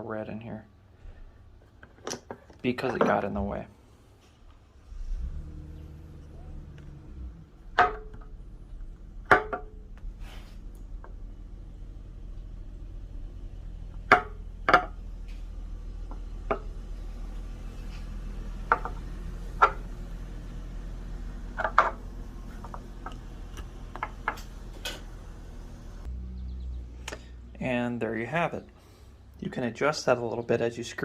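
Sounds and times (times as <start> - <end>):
low steady hum: 0.0 - 30.8.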